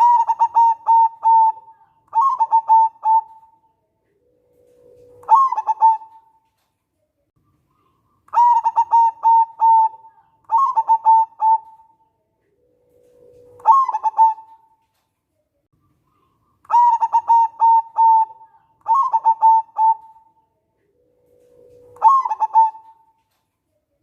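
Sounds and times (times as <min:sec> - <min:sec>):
dove cooing: 0:00.0 - 0:06.4, 0:07.8 - 0:14.8, 0:16.1 - 0:23.4.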